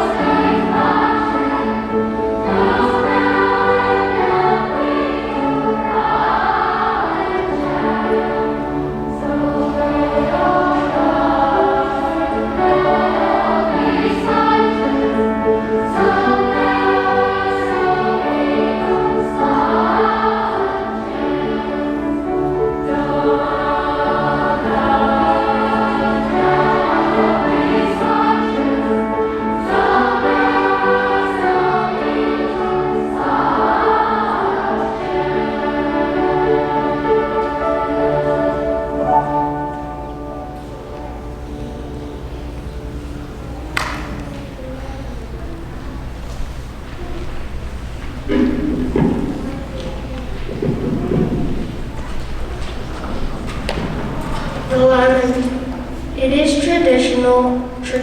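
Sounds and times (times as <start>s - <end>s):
choir singing slow song: 0.0s - 58.0s.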